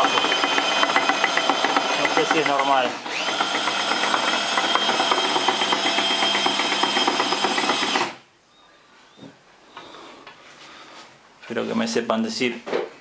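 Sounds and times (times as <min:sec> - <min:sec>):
gearbox whirring with ticking: 0:00.0 - 0:08.0.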